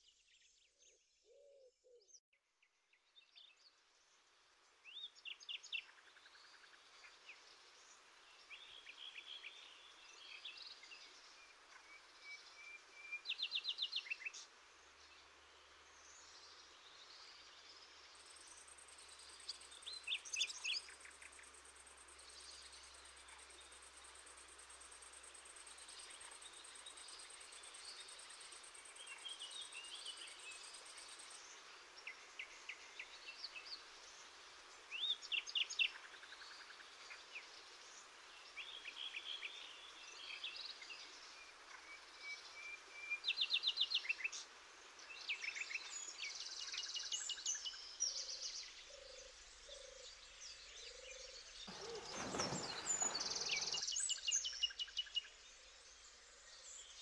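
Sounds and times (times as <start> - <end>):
birds calling and trilling: 51.2 - 55.2
river water rushing: 51.7 - 53.8.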